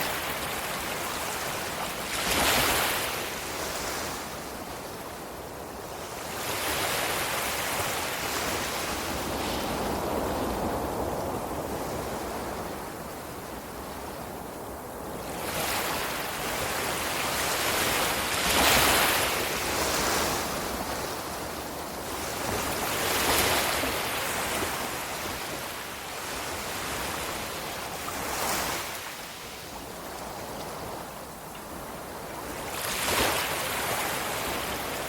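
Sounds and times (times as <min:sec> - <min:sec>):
ocean waves breaking: 0:00.0 - 0:04.6, 0:15.2 - 0:29.9.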